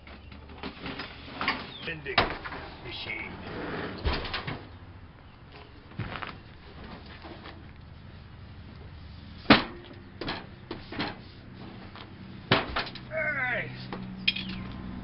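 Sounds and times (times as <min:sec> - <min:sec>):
sharp knocks and clunks: 0:09.5 - 0:11.2, 0:12.5 - 0:13.0.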